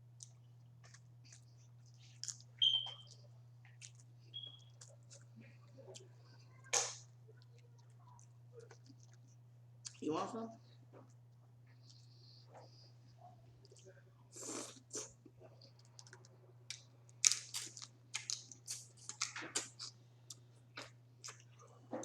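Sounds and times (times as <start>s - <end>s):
steady low hum: 0.0s - 22.0s
crawfish shells cracking: 15.9s - 19.9s.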